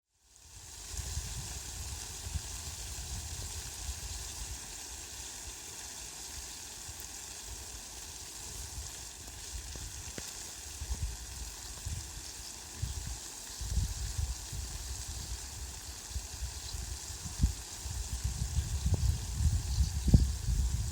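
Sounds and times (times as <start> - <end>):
heavy rain on leafy plants: 0.3 - 20.9
low rumbling gusts: 18.2 - 20.9.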